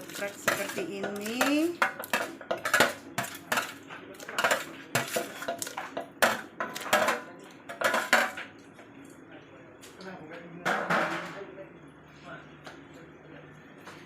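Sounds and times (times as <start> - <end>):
utensils clinking against pot: 0.0 - 8.5.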